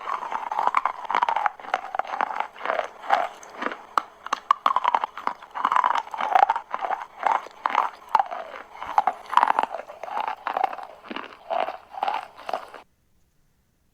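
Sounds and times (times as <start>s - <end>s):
chalk being chewed: 0.0s - 12.8s.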